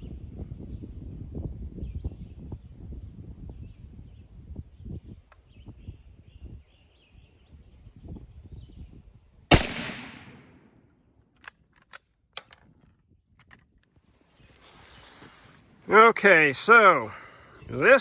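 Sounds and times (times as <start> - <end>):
rifle shot echoing: 9.5 - 10.8.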